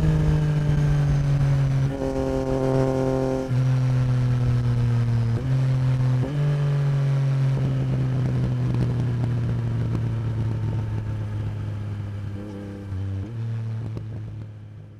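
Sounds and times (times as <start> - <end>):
motorcycle engine revving: 0.0 - 14.4.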